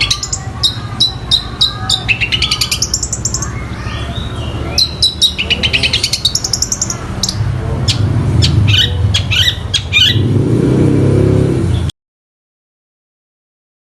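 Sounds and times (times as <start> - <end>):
shrike singing: 0.0 - 10.4.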